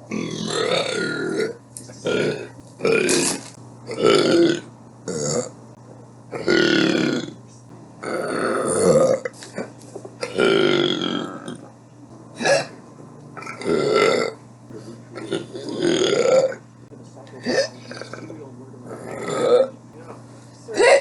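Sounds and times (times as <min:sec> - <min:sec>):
person burping: 0:00.1 - 0:05.5, 0:06.4 - 0:07.4, 0:08.0 - 0:09.3, 0:10.2 - 0:11.7, 0:12.4 - 0:12.8, 0:13.4 - 0:14.4, 0:15.2 - 0:16.6, 0:19.0 - 0:19.7.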